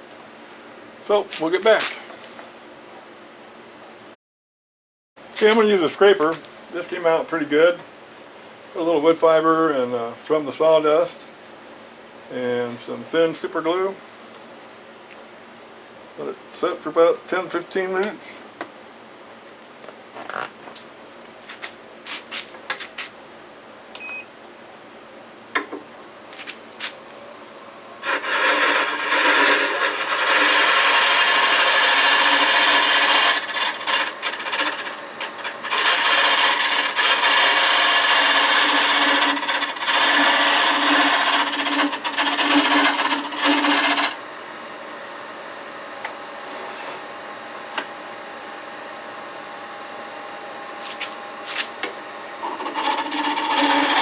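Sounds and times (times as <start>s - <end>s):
lathe tool rasping on wood: 28.0s - 44.2s, 52.4s - 54.0s
lathe humming: 28.0s - 54.0s.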